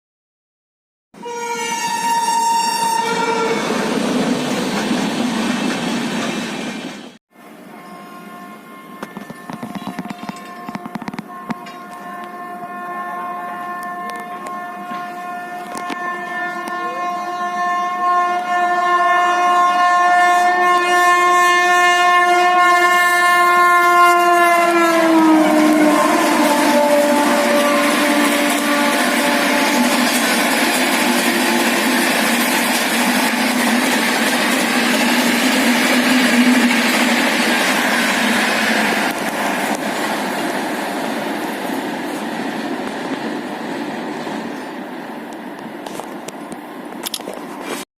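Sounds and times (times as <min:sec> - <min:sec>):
locomotive horn long blast: 0:01.2 - 0:04.0, 0:07.6 - 0:32.6
train wheel and rail noise: 0:01.2 - 0:47.8.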